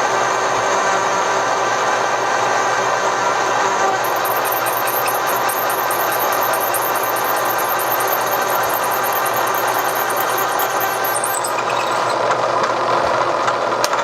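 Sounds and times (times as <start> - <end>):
high-pitched pulsing: 4.0 - 12.2
machine spindle running: 4.0 - 12.4.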